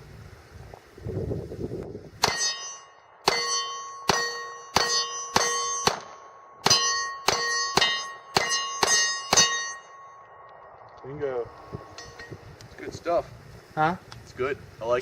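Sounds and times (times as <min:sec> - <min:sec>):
pistol shots: 0:02.2 - 0:09.8
steel target ringing: 0:02.2 - 0:10.5, 0:11.2 - 0:12.5.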